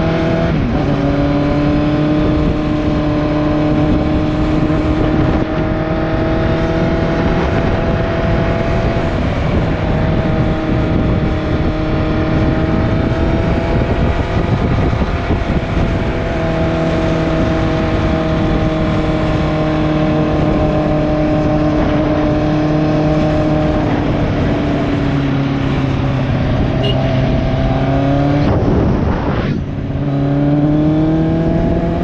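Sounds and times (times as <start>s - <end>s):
wind rush: 0.0s - 32.0s
motorcycle engine running: 6.4s - 30.0s.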